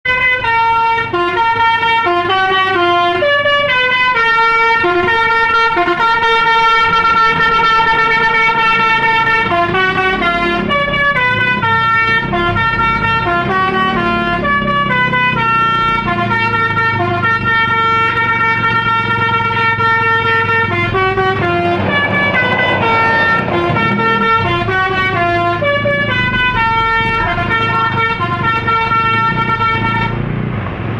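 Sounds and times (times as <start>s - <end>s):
multi-tone bus horn melody: 0.1s - 30.4s
low steady rumble: 20.5s - 26.0s.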